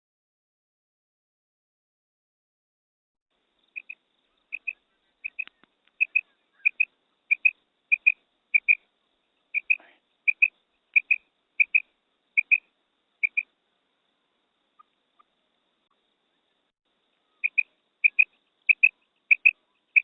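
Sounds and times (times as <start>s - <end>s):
quail calling: 3.7s - 13.5s, 14.7s - 15.4s, 17.2s - 20.0s.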